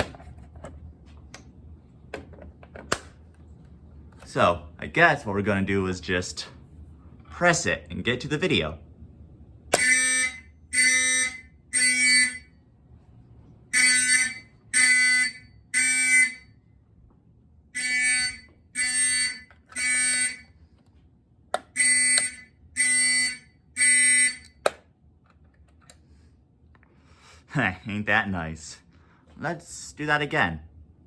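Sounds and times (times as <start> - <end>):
fire alarm horn buzzing: 9.7 - 12.8, 13.7 - 16.7, 17.7 - 20.8, 21.6 - 24.7.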